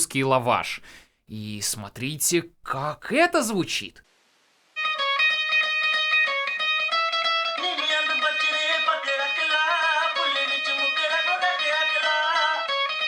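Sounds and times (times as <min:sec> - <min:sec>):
plucked string instrument melody: 0:04.8 - 0:13.0.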